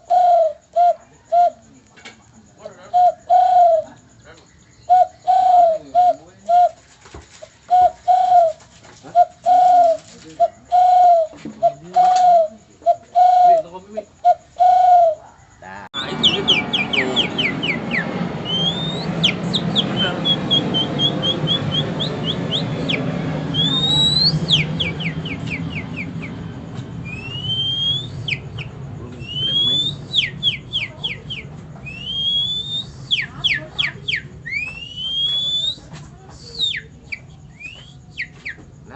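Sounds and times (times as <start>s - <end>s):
man imitating birdsong: 2.8s - 4.0s, 4.8s - 6.8s, 9.1s - 15.2s, 15.8s - 26.4s, 27.1s - 30.8s
noisy background: 16.0s - 38.9s.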